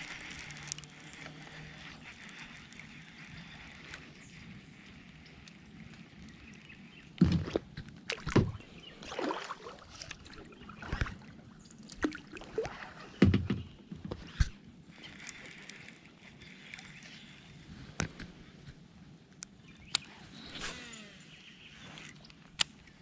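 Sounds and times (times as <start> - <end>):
sloshing water: 7.2 - 13.3
knocks against a kayak: 13.2 - 13.7.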